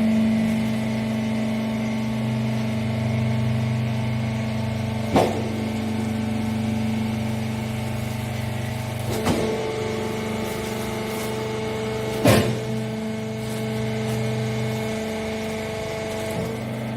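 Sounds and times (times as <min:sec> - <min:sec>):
baler motor and pump humming: 0:00.0 - 0:16.9
sharp metallic clank: 0:12.1 - 0:12.8.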